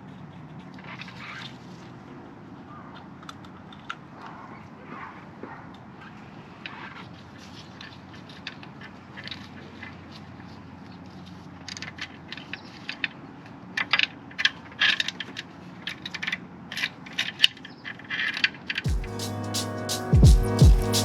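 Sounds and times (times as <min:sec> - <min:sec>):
music with deep sliding bass: 0:18.9 - 0:21.0.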